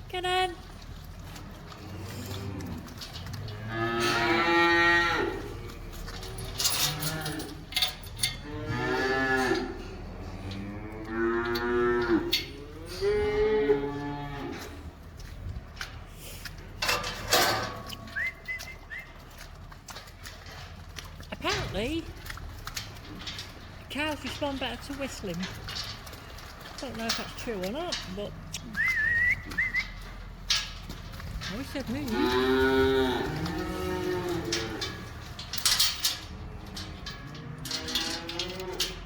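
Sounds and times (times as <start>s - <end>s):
cow mooing: 1.7s - 14.8s, 32.0s - 35.4s, 36.3s - 39.0s.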